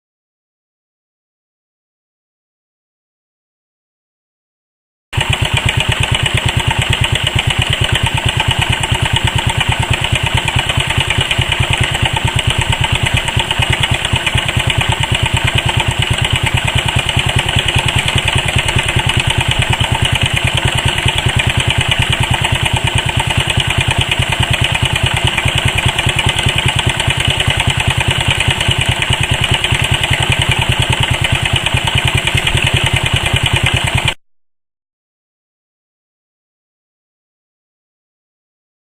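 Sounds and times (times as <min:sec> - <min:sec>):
engine knocking: 0:05.2 - 0:34.2
moped engine idling: 0:05.2 - 0:34.2.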